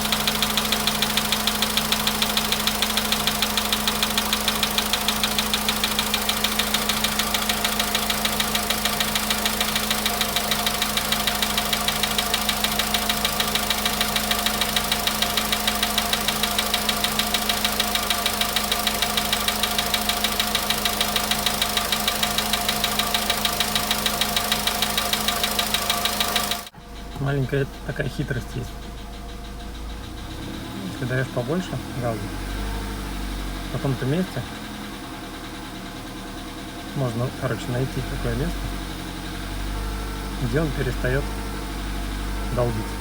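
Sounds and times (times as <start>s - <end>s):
car engine idling: 0.0s - 43.0s
rapid engine knock: 0.0s - 43.0s.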